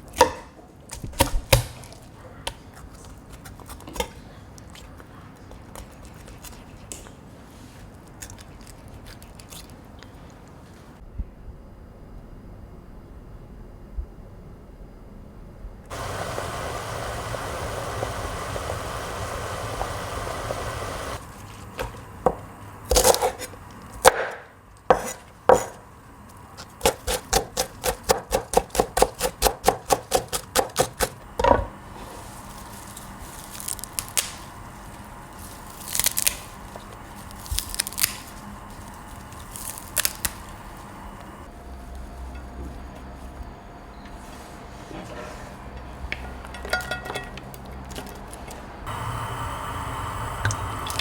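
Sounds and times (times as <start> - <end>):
steady hissing noise: 15.9 - 28.2, 29.4 - 42.2, 48.8 - 51.0
knife chopping on cutting board: 22.9 - 25.8, 26.8 - 31.7.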